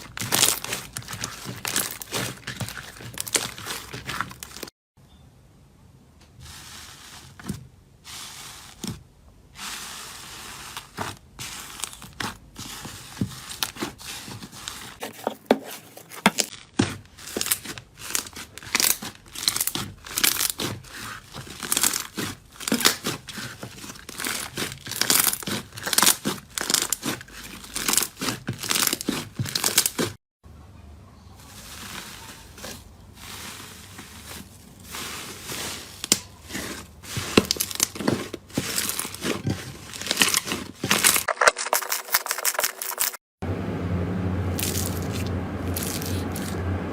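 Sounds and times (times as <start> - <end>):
slime crackling and popping: 0.0 - 4.7, 16.5 - 30.2
sticky slime tearing: 0.0 - 4.7, 16.5 - 30.2, 34.3 - 43.0, 44.6 - 46.6.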